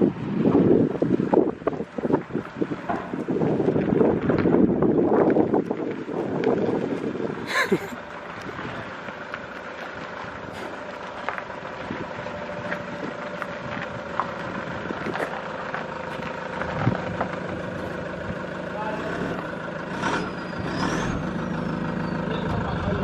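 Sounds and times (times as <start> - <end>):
vehicle engine idling: 0.0 - 23.0.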